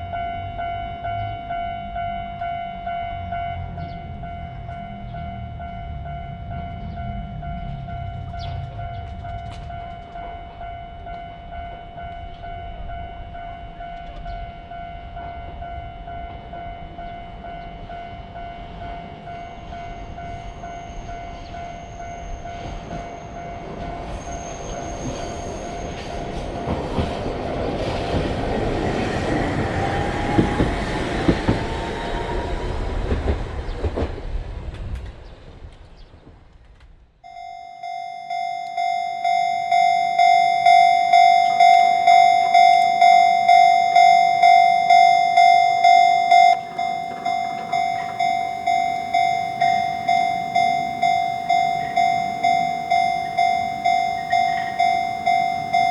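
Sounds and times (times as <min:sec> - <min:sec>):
level-crossing alarm ringing: 0:00.0 - 0:32.4, 0:37.2 - 0:55.9
train passing with rising whine: 0:00.0 - 0:36.5, 0:37.2 - 0:55.9
wheels clattering over rail joints: 0:21.4 - 0:37.0, 0:41.1 - 0:55.9.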